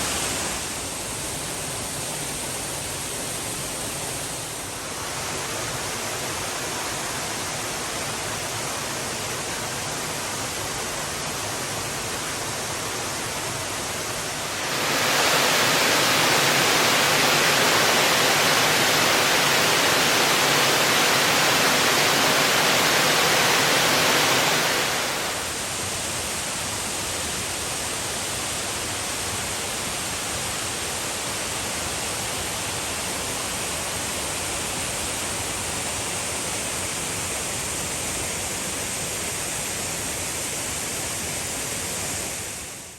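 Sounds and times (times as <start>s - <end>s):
waterfall rushing: 2.2s - 36.2s.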